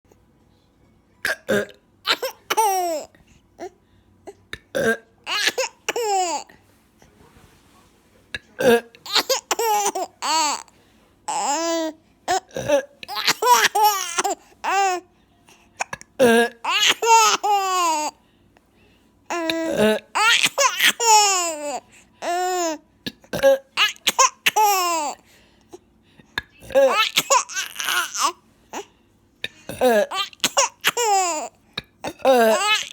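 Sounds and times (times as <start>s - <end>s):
baby laughing: 2.1s - 3.1s, 5.3s - 6.5s, 9.0s - 10.7s, 13.1s - 15.0s, 16.6s - 18.1s, 19.3s - 22.8s, 26.8s - 28.4s, 30.1s - 31.5s, 32.1s - 32.9s.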